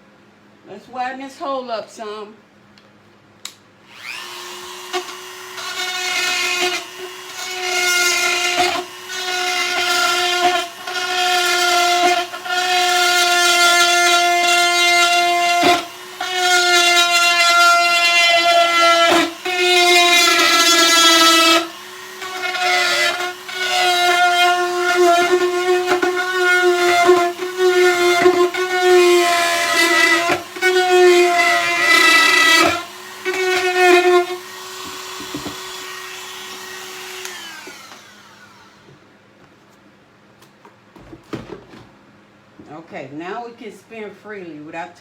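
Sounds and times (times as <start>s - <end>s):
power drill whining: 3.9s - 39.1s.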